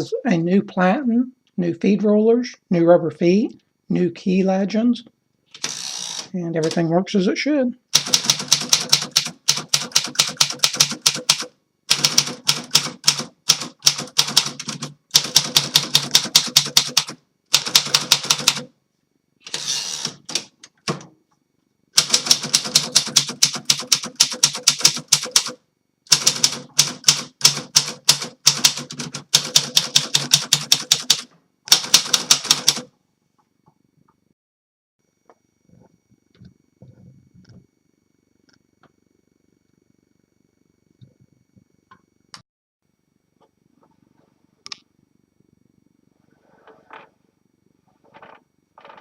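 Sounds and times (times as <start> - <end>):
typewriter key strikes: 8.0 - 18.7, 22.0 - 32.9
typewriter rasping sweep: 19.5 - 20.5.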